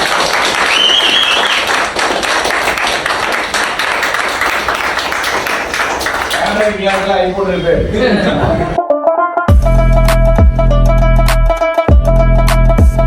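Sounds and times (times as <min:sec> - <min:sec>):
crowd clapping: 0:00.0 - 0:07.1
high whistle-like tone: 0:00.7 - 0:01.6.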